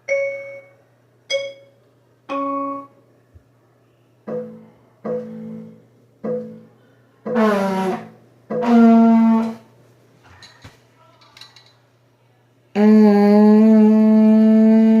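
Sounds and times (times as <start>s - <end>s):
trombone notes: 7.3s - 9.7s.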